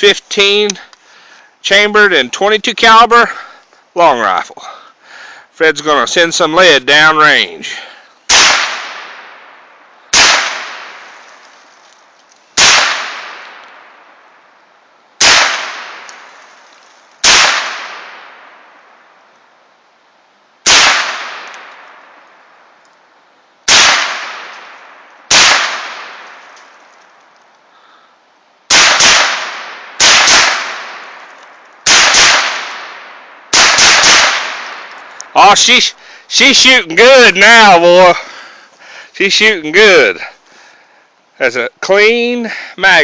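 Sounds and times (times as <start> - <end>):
rifle shots echoing: 8.3 - 11.5, 12.6 - 14.1, 15.2 - 16.5, 17.2 - 18.9, 20.6 - 22.2, 23.7 - 26.8, 28.7 - 35.3.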